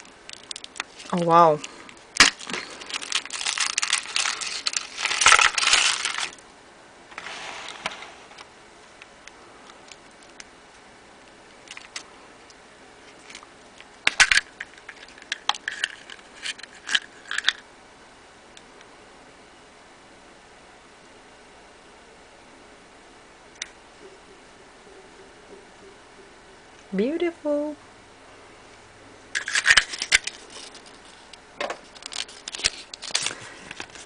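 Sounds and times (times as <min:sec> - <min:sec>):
foil wrapper crinkling: 0:00.0 - 0:06.4, 0:14.0 - 0:17.6, 0:29.4 - 0:34.0
hard pieces clicking and clattering: 0:14.1 - 0:17.6, 0:29.4 - 0:34.0.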